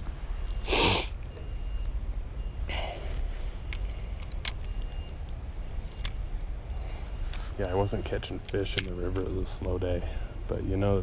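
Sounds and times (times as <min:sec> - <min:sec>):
breathy exhale: 0:00.6 - 0:01.2, 0:02.7 - 0:03.2, 0:06.7 - 0:07.2.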